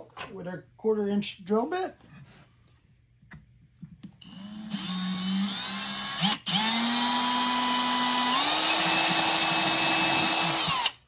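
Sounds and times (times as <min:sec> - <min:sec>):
power drill running: 0:04.2 - 0:11.0.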